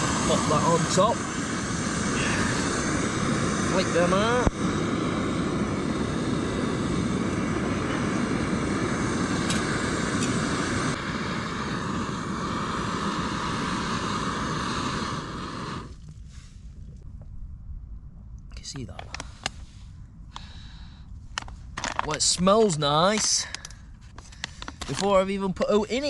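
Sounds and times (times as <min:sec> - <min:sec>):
gas stove roaring: 0:00.0 - 0:16.6.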